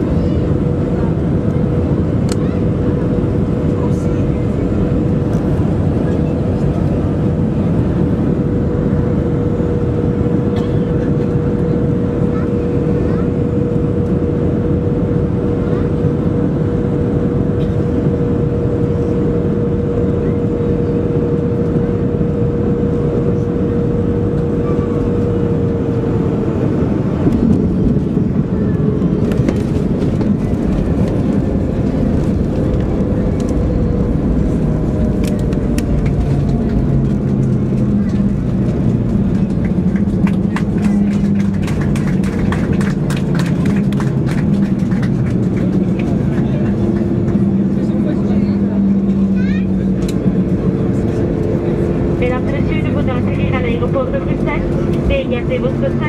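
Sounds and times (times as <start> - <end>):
airliner cabin engine noise: 0.0 - 56.0.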